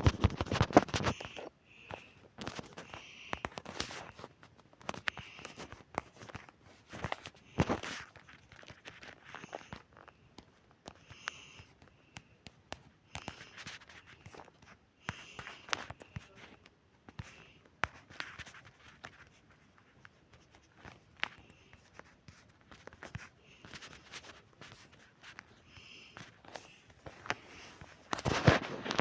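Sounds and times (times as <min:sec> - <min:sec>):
faint clicks and taps: 0:00.0 - 0:29.0.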